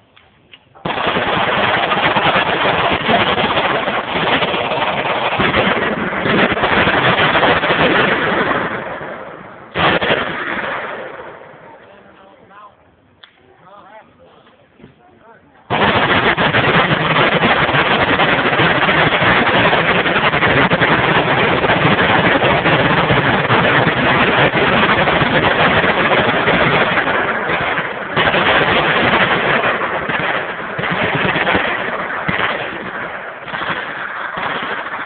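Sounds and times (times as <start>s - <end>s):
automatic gunfire: 0.8s - 11.3s, 15.7s - 35.0s.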